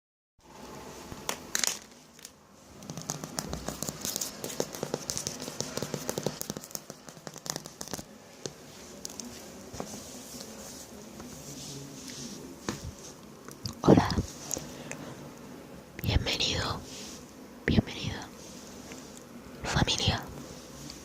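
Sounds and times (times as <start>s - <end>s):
crackling and clicking: 1.2s - 9.3s.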